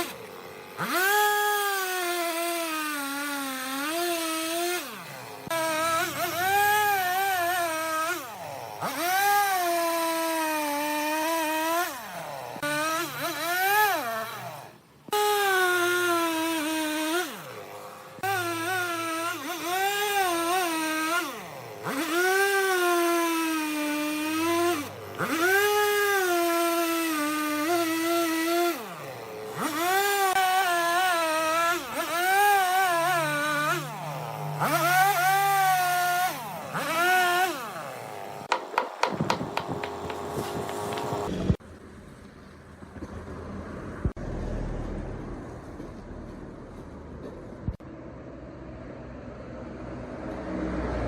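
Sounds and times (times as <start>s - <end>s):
power tool motor revving: 0.0s - 41.6s
sharp clicks: 38.5s - 41.6s.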